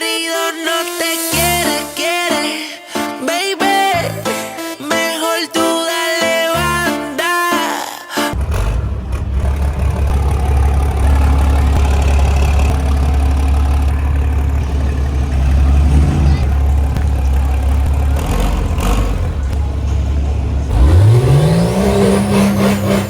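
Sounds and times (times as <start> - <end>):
truck engine rumbling and revving: 8.4 - 23.0.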